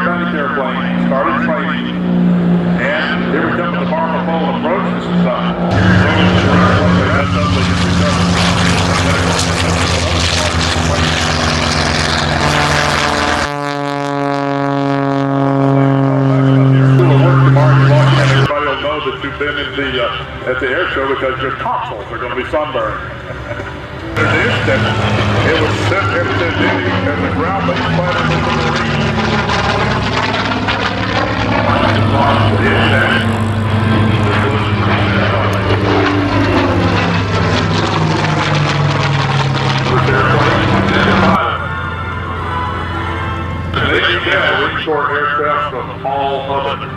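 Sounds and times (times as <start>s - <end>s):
propeller airplane engine: 0.0s - 46.9s
steady engine drone: 0.0s - 46.9s.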